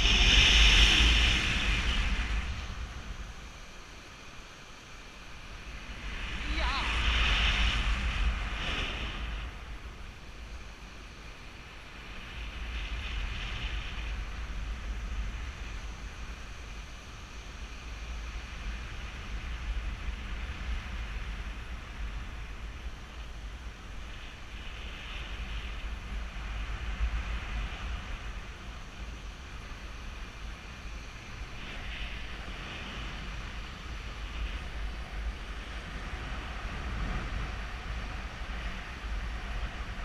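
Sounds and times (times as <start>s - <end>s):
wind buffeting microphone: 0.0s - 4.3s, 4.9s - 40.0s.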